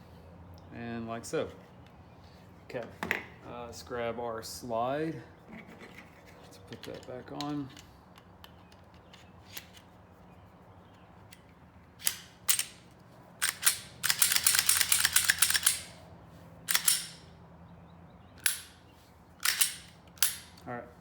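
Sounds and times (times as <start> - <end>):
pistol slide metal clicks: 11.3 - 16.0, 16.7 - 17.3, 18.4 - 18.8, 19.4 - 20.6
rattling metal clicks: 11.3 - 16.0, 16.7 - 17.3, 18.4 - 18.8, 19.4 - 20.7.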